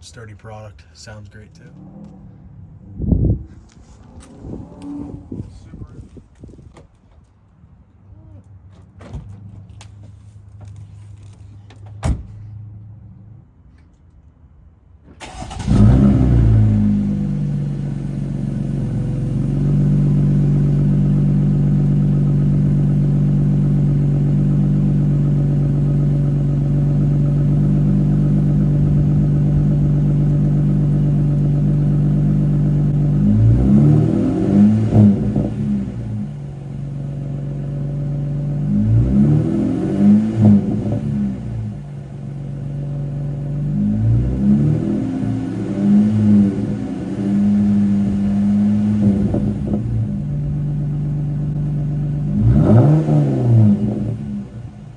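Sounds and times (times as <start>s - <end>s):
engine revving: 1.1s - 5.7s, 15.2s - 50.9s, 51.6s - 54.9s
car engine starting and idling: 14.9s - 54.9s.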